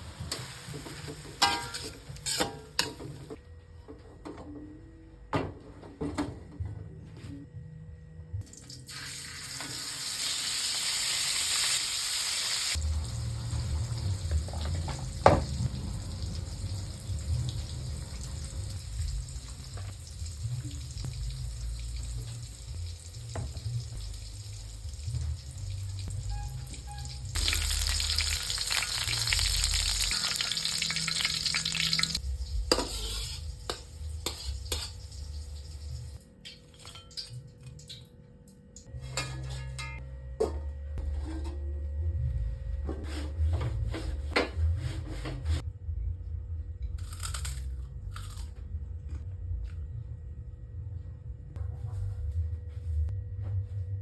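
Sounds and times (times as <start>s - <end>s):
food sizzling in a pan: 0.0s - 2.7s, 8.8s - 26.4s, 27.0s - 36.2s.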